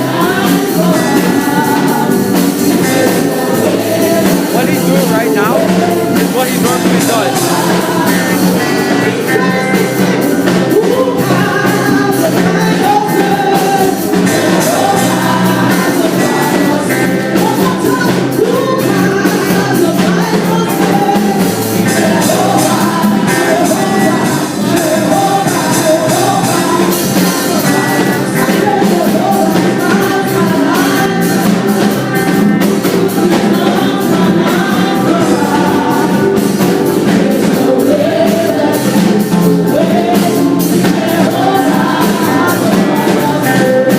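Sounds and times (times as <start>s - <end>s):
band playing sustained chords: 0.0s - 43.9s
drum and cymbal beat: 0.0s - 43.9s
gospel singers: 0.0s - 43.9s.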